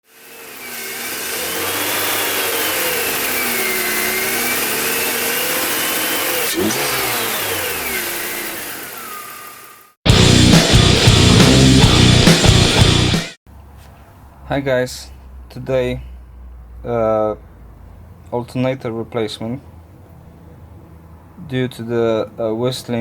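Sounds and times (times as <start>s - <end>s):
car engine running: 0.8s - 13.3s
loud rock music: 10.0s - 13.4s.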